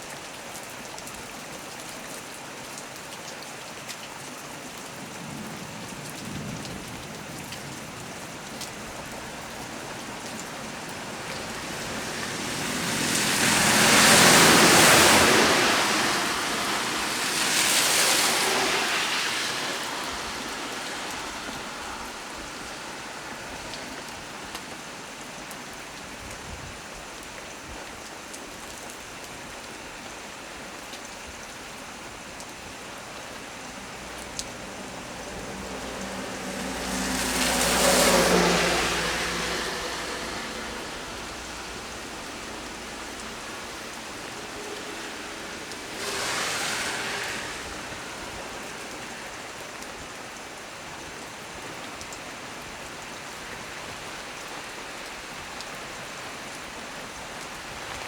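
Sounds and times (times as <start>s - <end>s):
heavy rain hissing on leaves: 0.0s - 58.0s.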